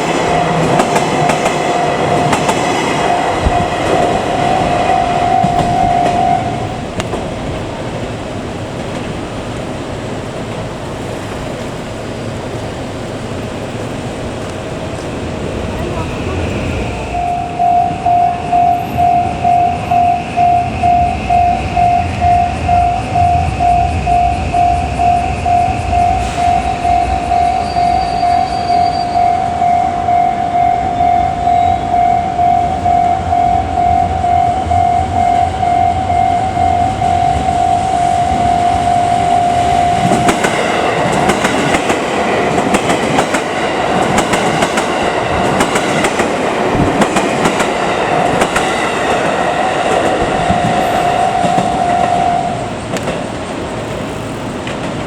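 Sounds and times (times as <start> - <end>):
wheels clattering on rail joints: 0.0 - 33.4, 36.6 - 55.0
train passing: 0.0 - 55.0
level-crossing bell ringing: 17.1 - 41.0.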